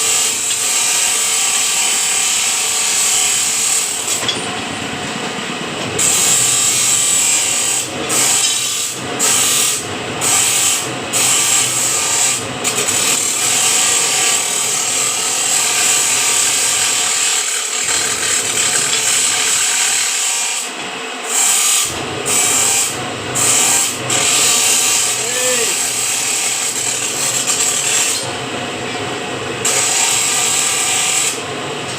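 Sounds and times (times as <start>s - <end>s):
band saw blade rasping: 6.0s - 20.7s, 21.3s - 28.3s, 29.6s - 31.4s.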